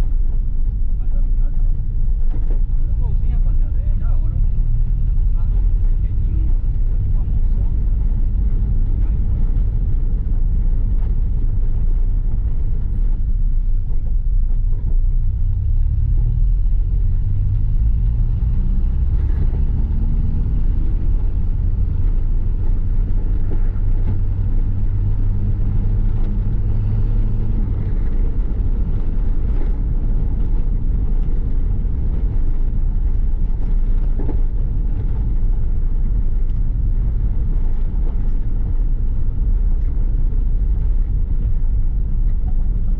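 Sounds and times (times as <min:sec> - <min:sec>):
car engine accelerating: 0:00.0 - 0:42.9
steady low rumble: 0:00.0 - 0:42.9.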